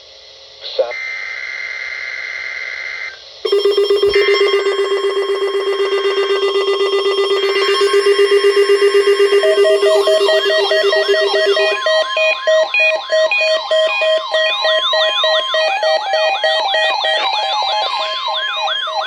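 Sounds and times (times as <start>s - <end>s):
buzzy electronic alert tone: 3.5s - 14.0s
high electronic data tones: 3.5s - 18.6s.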